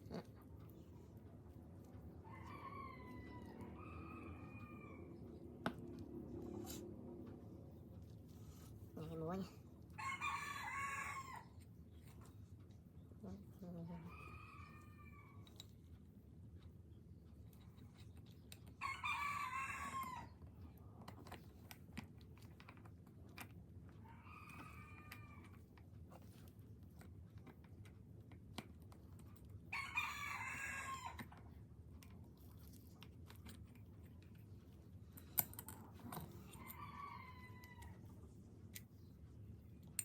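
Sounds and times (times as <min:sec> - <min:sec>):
rooster crowing: 0:02.2 - 0:05.1, 0:10.0 - 0:11.5, 0:18.8 - 0:20.3, 0:29.7 - 0:31.2, 0:36.5 - 0:38.0.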